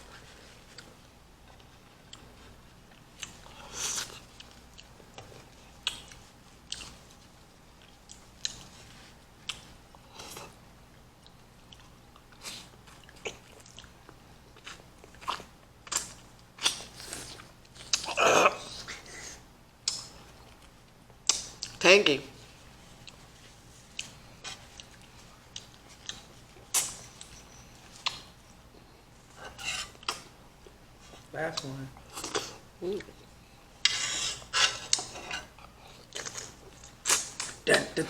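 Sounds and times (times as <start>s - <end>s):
people chewing fruit: 0.0s - 38.0s.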